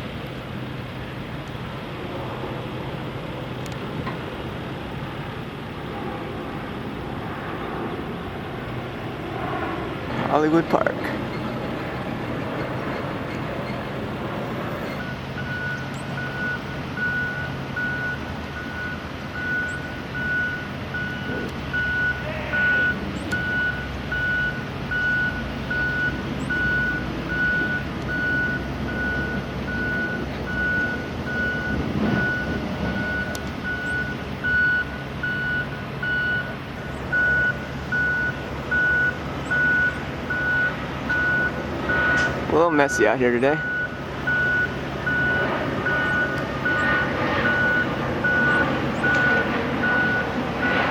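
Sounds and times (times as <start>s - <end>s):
low engine hum: 0.0s - 50.9s
reversing alarm beeping: 12.4s - 50.9s.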